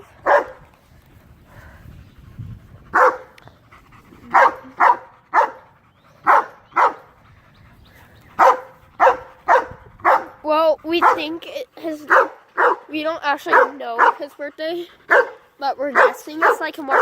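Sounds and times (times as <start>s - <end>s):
dog barking: 0.2s - 0.6s, 3.0s - 3.3s, 4.3s - 5.6s, 6.3s - 7.0s, 8.4s - 10.4s, 11.0s - 11.3s, 12.1s - 12.9s, 13.5s - 14.2s, 15.1s - 15.4s, 16.0s - 17.0s.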